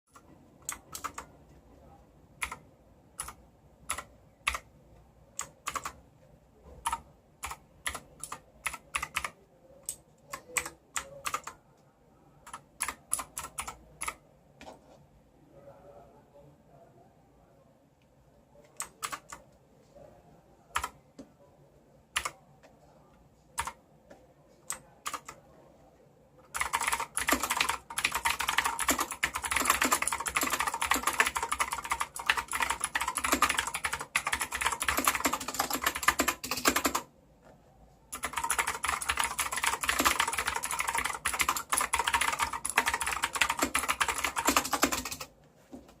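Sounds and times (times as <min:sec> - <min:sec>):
clicky mechanical keyboard typing: 0:00.1 - 0:01.4, 0:02.4 - 0:02.6, 0:03.2 - 0:04.7, 0:05.3 - 0:06.0, 0:06.7 - 0:11.6, 0:12.4 - 0:14.2, 0:18.6 - 0:19.5, 0:20.7 - 0:21.0, 0:22.1 - 0:22.4, 0:23.6 - 0:23.8, 0:24.6 - 0:25.4, 0:26.4 - 0:37.1, 0:38.1 - 0:45.3.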